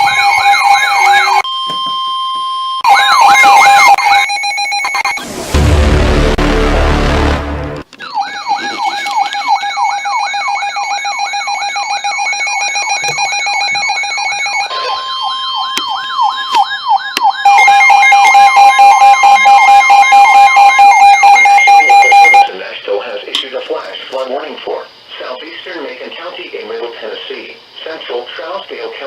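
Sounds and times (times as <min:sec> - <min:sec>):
electronic siren sweeping: 0:00.0 - 0:01.4, 0:02.8 - 0:22.5
loud noisy burst: 0:05.2 - 0:07.9.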